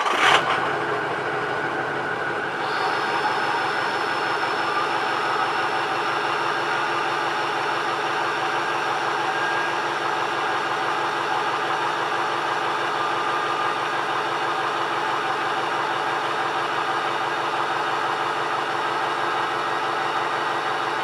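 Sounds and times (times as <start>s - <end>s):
diesel engine idling: 0.0s - 21.0s
turbocharger whistle: 1.5s - 10.1s.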